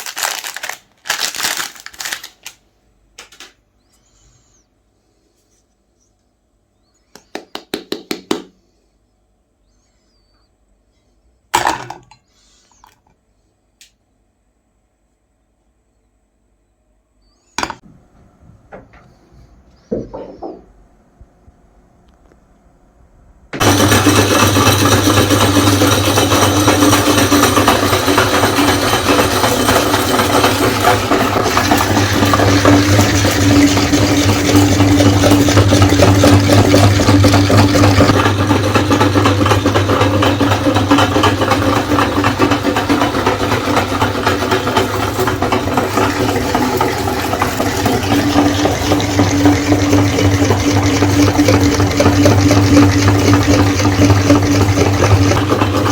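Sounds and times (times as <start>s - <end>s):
meat grinder motor humming: 23.6s - 55.9s.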